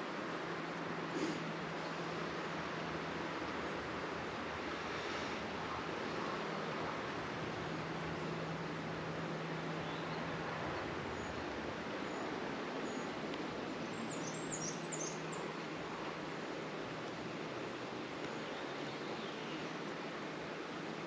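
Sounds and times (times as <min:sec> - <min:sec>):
outdoor background hiss: 0:00.0 - 0:21.0
songbird chirps: 0:09.5 - 0:16.3, 0:17.5 - 0:20.0.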